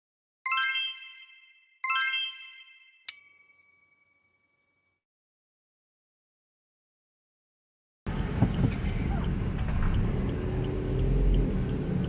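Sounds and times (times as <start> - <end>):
chime notes ringing: 0.5 - 4.4.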